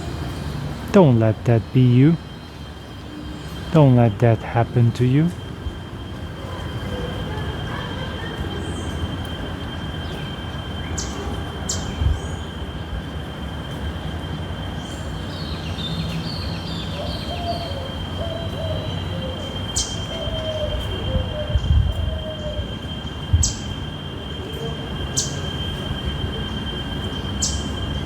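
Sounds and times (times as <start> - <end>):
thin high tone: 1.0 - 2.3, 3.7 - 5.4.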